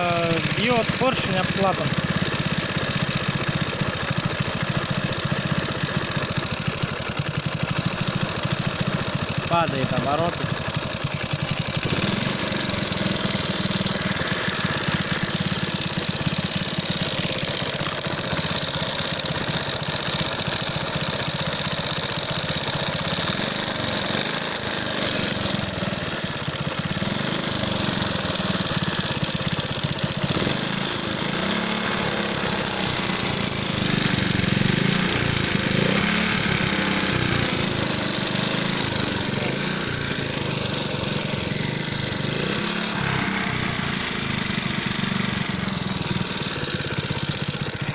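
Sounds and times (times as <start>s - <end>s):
moped engine knocking: 0.0s - 47.9s.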